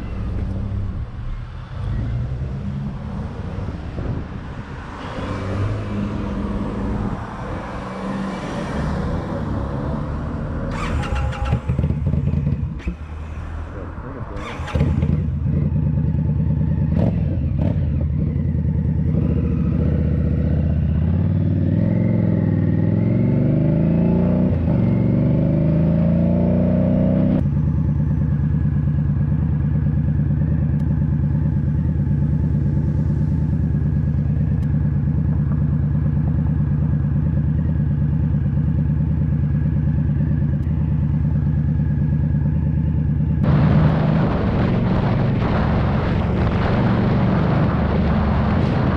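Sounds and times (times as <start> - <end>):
motorcycle engine running: 9.3 - 23.1, 27.4 - 48.9.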